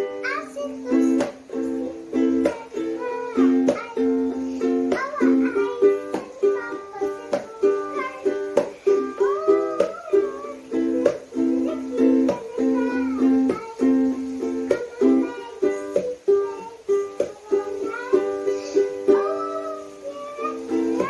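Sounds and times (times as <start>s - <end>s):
ukulele strumming: 0.0s - 21.0s.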